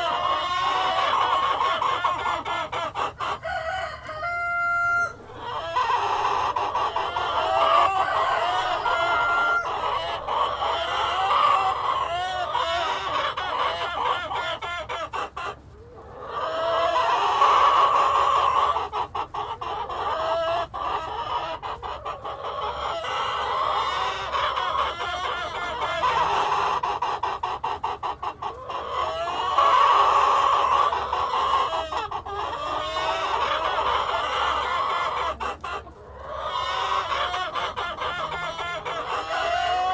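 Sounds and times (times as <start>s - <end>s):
hens clucking and cackling: 0.0s - 39.9s
rooster crowing: 3.4s - 11.8s.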